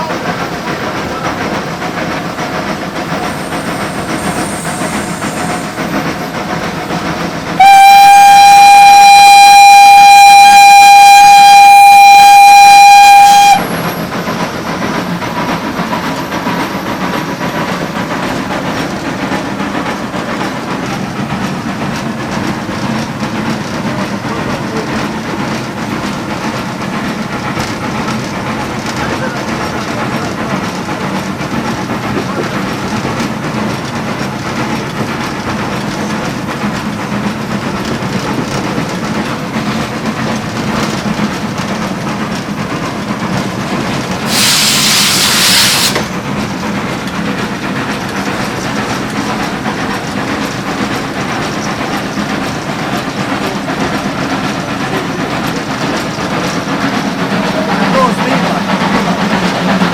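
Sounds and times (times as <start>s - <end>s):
steam locomotive mechanical din: 0.0s - 59.9s
loud steam hiss: 0.1s - 9.4s, 43.5s - 46.3s, 52.1s - 59.9s.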